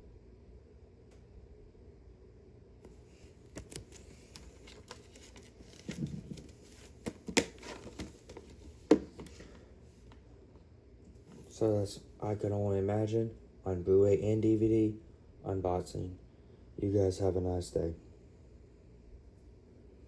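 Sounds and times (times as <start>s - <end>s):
paper insert crinkling: 3.5s - 9.5s
plastic case clicks: 3.6s - 9.4s.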